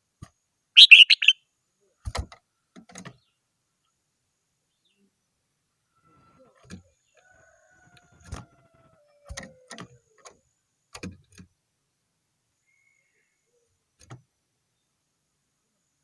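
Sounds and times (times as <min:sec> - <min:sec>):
rooster crowing: 0:07.2 - 0:10.0.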